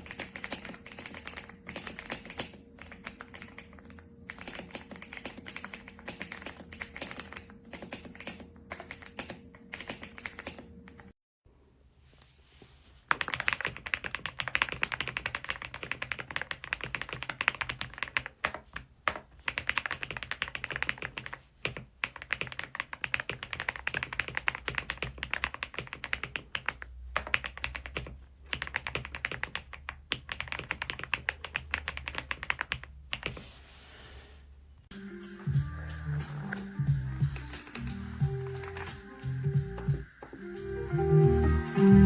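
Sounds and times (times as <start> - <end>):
fast typing on mechanical keyboard: 0.0 - 11.1, 13.1 - 33.4.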